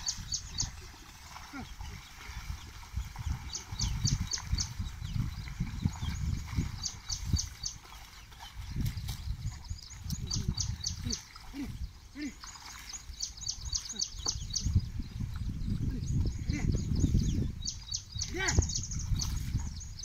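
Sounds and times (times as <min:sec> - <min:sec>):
bird chirping: 0:00.0 - 0:20.0
hooves sloshing through mud: 0:00.0 - 0:20.0.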